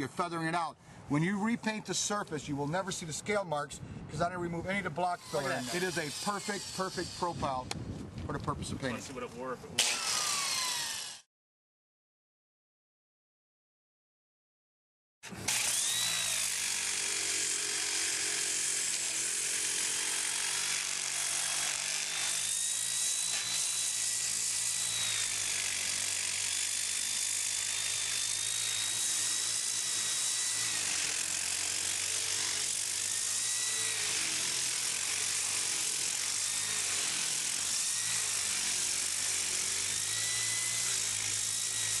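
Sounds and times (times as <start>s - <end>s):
power tool grinding wall: 5.2s - 7.6s, 9.8s - 11.3s, 15.2s - 42.0s.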